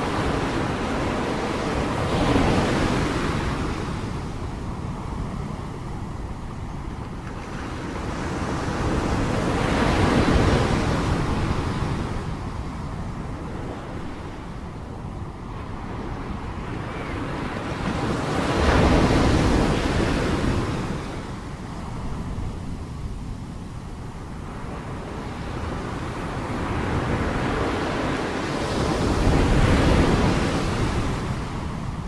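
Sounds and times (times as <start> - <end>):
sea waves breaking on shore: 0.0 - 32.0.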